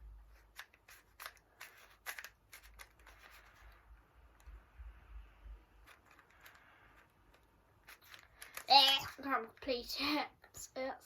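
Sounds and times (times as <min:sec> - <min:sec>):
puzzle cube clicking and rattling: 0:00.2 - 0:04.7, 0:05.8 - 0:09.8.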